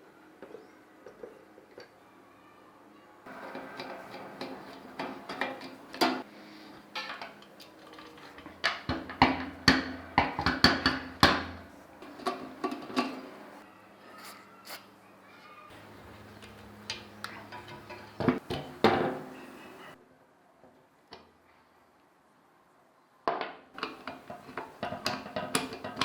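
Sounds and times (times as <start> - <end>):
hand tools knocking on metal: 3.3 - 6.3, 7.0 - 13.4, 23.8 - 26.0.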